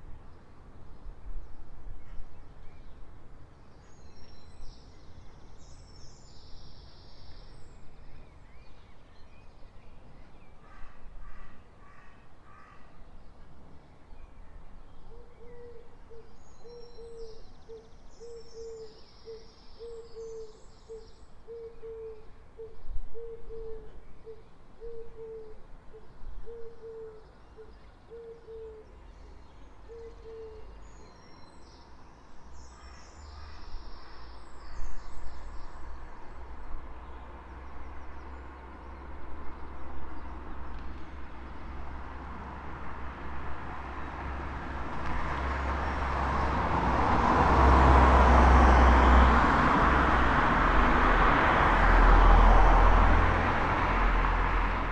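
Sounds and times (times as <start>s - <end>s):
songbirds chirping: 0.0s - 50.1s
low traffic rumble: 22.2s - 54.9s
car approaching: 35.1s - 54.9s.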